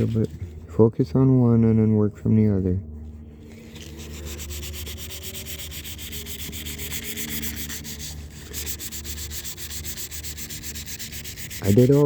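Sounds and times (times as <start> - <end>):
sandpaper rubbing by hand: 0.0 - 0.3, 3.5 - 12.0.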